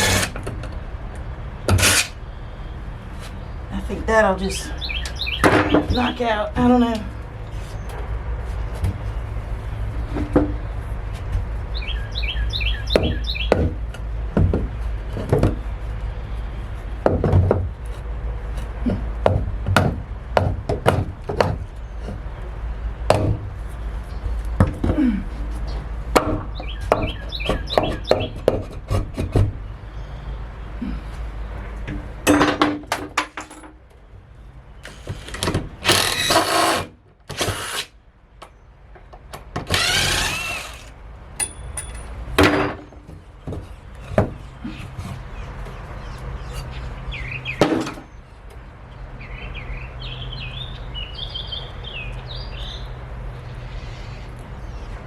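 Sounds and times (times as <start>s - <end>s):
knocks on wooden boards: 5.4s - 6.1s, 12.9s - 15.6s, 17.0s - 17.8s, 18.9s - 21.7s, 23.1s - 23.4s, 26.1s - 29.6s, 42.4s - 44.4s, 47.6s - 48.1s.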